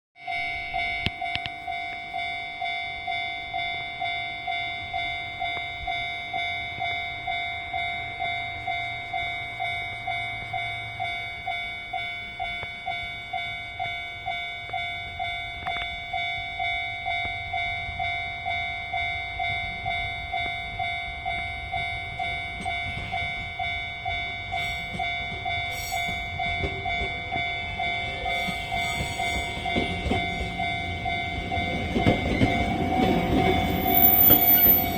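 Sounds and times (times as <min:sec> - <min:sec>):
level crossing warning bell ringing: 0:00.2 - 0:34.9
train rumbling and clattering: 0:14.6 - 0:34.9.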